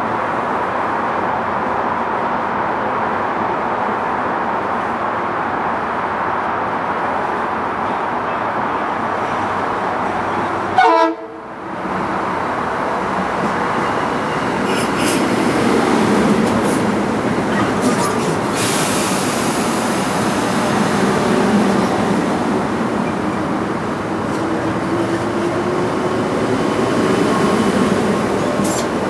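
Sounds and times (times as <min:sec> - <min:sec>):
electric train rumbling: 0:00.0 - 0:29.0
train horn toot: 0:10.8 - 0:11.4.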